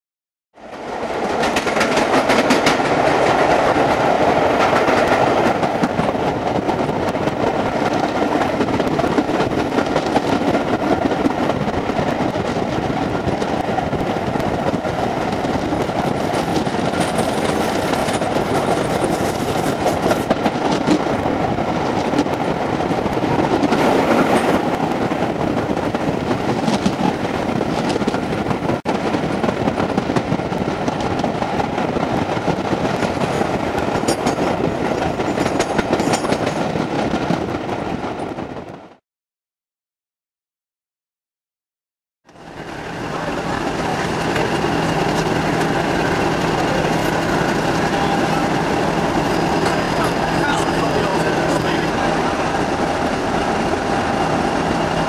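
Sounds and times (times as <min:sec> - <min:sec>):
train rumbling: 0:00.6 - 0:39.0, 0:42.3 - 0:55.0
wheels clattering over rail joints: 0:32.9 - 0:36.8, 0:43.1 - 0:55.0.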